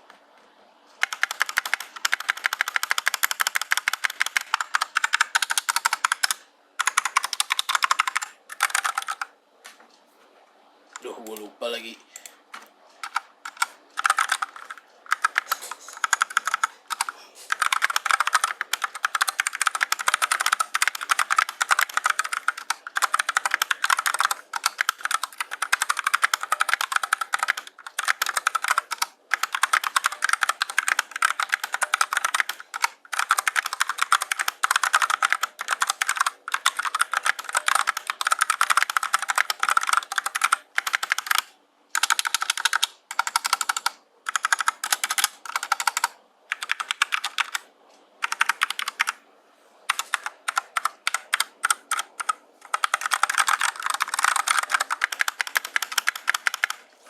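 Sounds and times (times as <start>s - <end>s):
mechanical keyboard typing: 1.0s - 9.3s, 12.2s - 49.2s, 49.9s - 56.9s.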